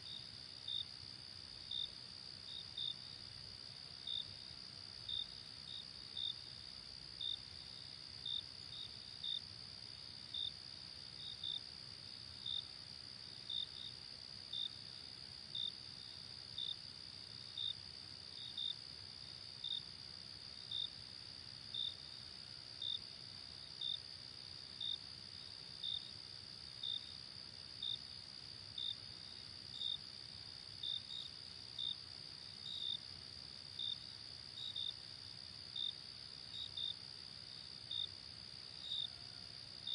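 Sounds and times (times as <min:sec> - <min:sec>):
cricket chirping: 0:00.0 - 0:39.9.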